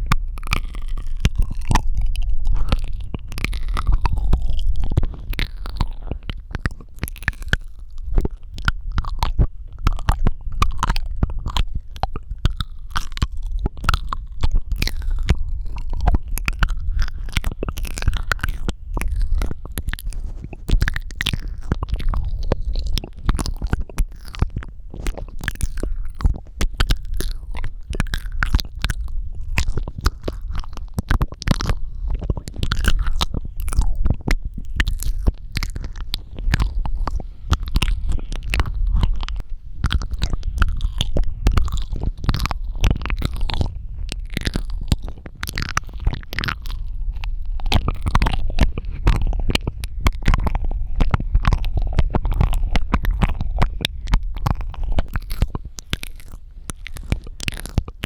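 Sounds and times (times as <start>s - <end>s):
steady low rumble: 0.0s - 58.0s
wet mouth clicks and smacks: 0.0s - 58.0s.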